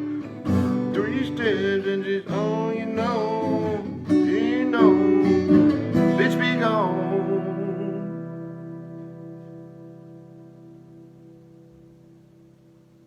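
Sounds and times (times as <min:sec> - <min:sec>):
person singing: 0:00.0 - 0:08.9
strummed acoustic guitar: 0:00.0 - 0:13.0.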